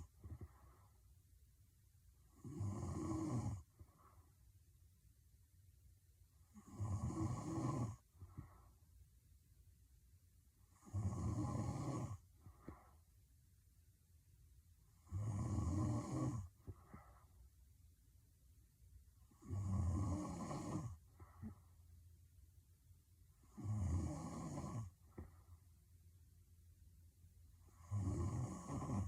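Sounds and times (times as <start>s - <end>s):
woman snoring: 2.3s - 3.7s, 6.5s - 8.0s, 10.7s - 12.2s, 15.0s - 16.5s, 19.3s - 21.5s, 23.4s - 25.0s, 27.6s - 29.0s.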